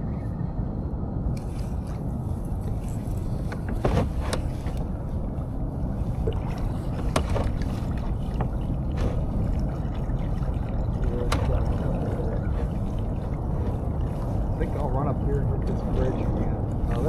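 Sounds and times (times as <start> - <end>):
wind: 0.0 - 17.0
water rushing: 4.0 - 17.0.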